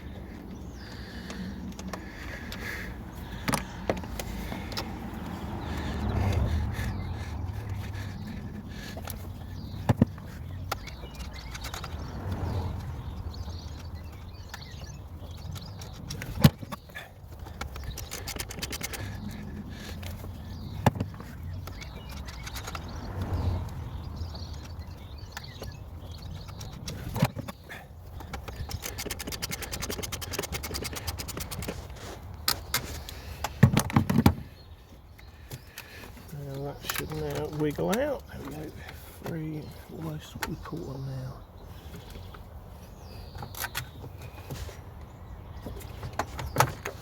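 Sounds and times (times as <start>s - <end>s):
ratchet clicking: 28.4s - 31.8s.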